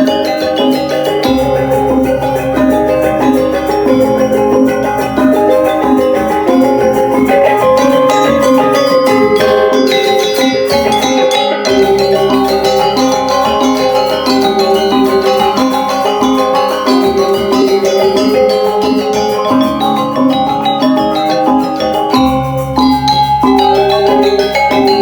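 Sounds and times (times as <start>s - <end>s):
gamelan music: 0.0s - 25.0s.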